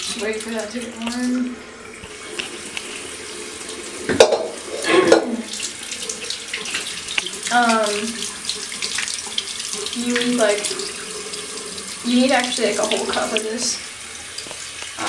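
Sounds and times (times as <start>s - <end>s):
water running from a tap: 0.0s - 15.0s.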